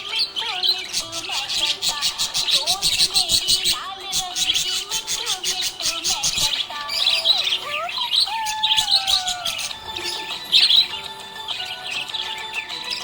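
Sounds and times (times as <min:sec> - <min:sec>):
budgerigars chirping and warbling: 0:00.0 - 0:13.0.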